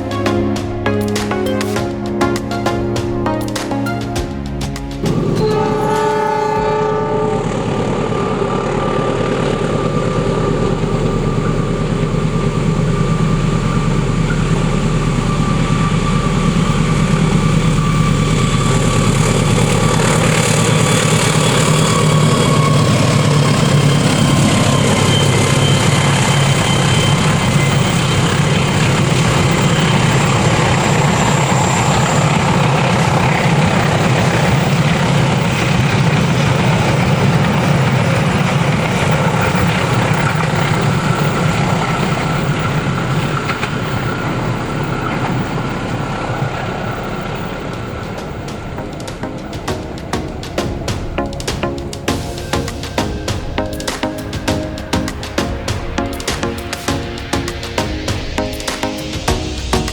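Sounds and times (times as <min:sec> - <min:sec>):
diesel locomotive rumble: 0:04.4 - 0:59.9
train coaches rolling on rails: 0:04.5 - 0:59.9
short train horn tone: 0:05.1 - 0:08.0.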